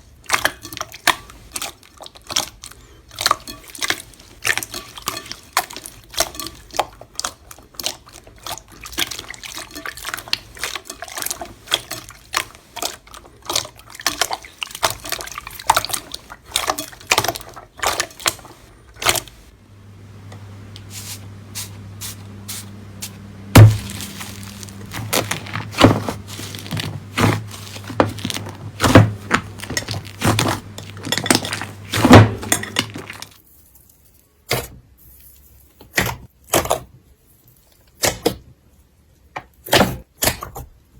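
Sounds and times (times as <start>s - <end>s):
steady low hum: 18.7s - 33.3s
slime crackling and popping: 23.6s - 30.8s.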